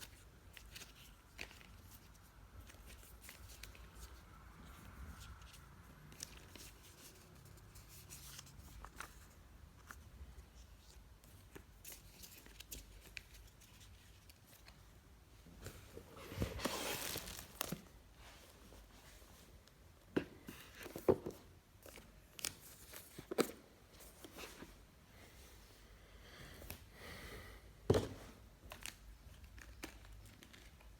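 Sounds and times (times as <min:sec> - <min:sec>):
packaging clicks and rustles: 0:16.3 - 0:17.9, 0:28.7 - 0:30.9
paper or plastic tearing: 0:16.6 - 0:17.8.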